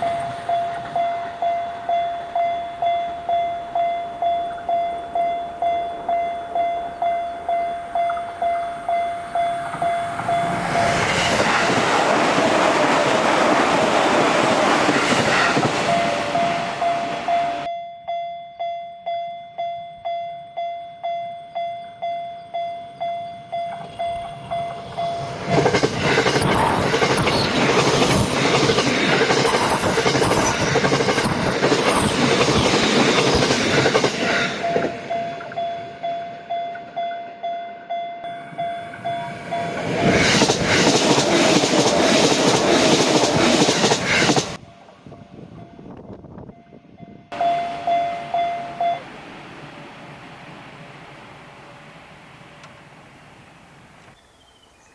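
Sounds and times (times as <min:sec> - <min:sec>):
electric train passing: 0:00.0 - 0:17.8, 0:22.5 - 0:54.9
level-crossing bell clanging: 0:00.0 - 0:25.4, 0:34.5 - 0:40.0, 0:47.3 - 0:51.9.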